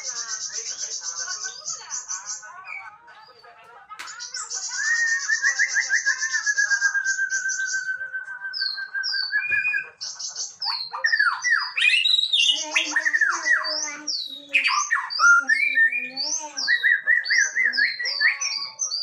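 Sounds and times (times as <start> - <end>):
bird singing whistles and trills: 4.1 - 19.0.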